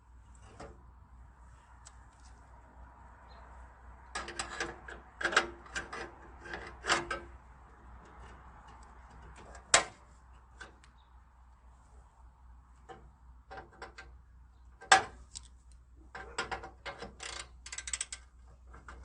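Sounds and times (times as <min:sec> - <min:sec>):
metallic clicks and knocks: 0:04.0 - 0:07.4, 0:12.8 - 0:14.2, 0:14.8 - 0:19.0.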